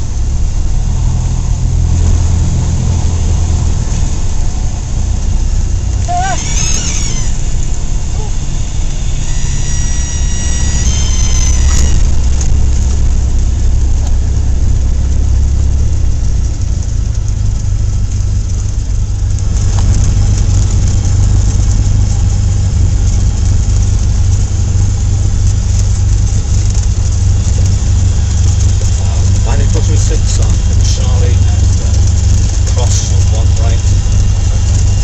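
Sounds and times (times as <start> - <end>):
aircraft engine and airflow rumble: 0.0 - 35.0
high reedy warning horn: 6.1 - 12.4.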